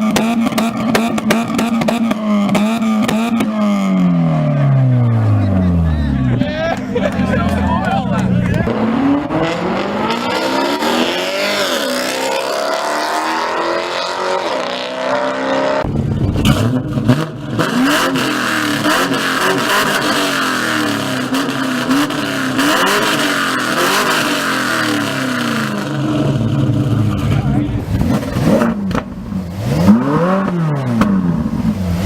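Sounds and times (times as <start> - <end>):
car engine accelerating: 0.0 - 32.0
sports car engines revving: 0.0 - 32.0.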